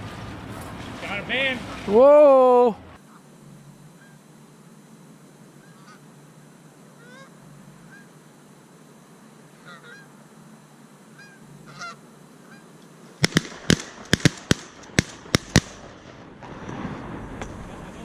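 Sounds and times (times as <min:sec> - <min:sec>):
faint goose honks: 0:00.0 - 0:03.3, 0:05.6 - 0:06.2, 0:07.0 - 0:08.3, 0:09.5 - 0:10.3, 0:11.1 - 0:12.8
shotgun shots: 0:13.2 - 0:16.9.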